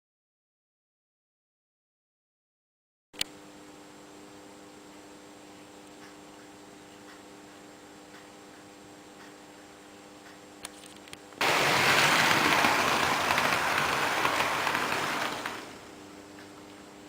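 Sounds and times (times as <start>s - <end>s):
steady electric hum: 3.2s - 17.0s
model train rattling on metal track: 11.4s - 15.9s.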